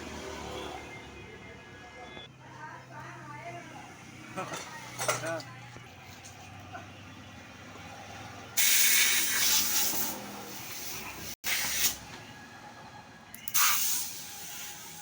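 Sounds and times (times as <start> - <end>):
compressed air hissing: 8.6 - 12.0, 13.5 - 15.0.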